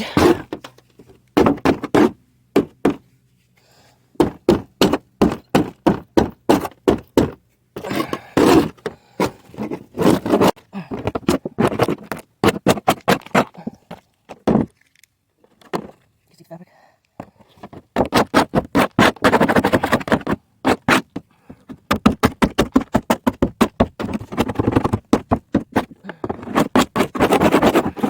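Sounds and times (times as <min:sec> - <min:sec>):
scraper scraping metal roof: 0:00.0 - 0:03.1, 0:04.2 - 0:13.5, 0:17.5 - 0:28.0.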